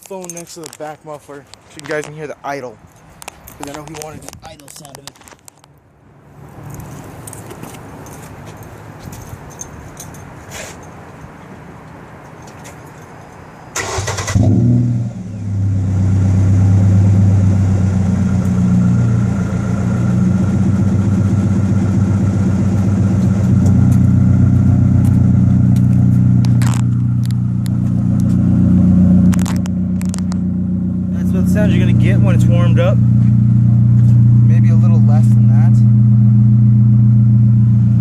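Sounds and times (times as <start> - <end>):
engine cranking and starting: 13.8 - 14.6.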